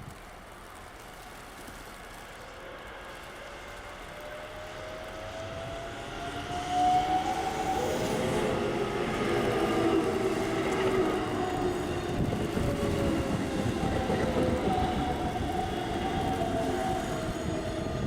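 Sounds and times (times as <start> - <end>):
train wheels rumbling: 0.2 - 18.0.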